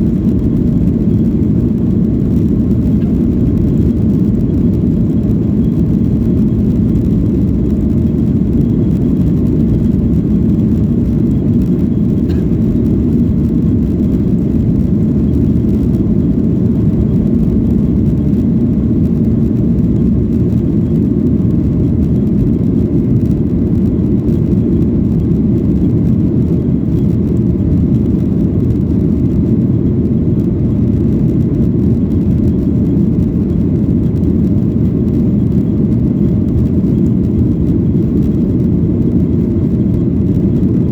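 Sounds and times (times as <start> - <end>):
plane engines rumbling in cabin: 0.0 - 40.9.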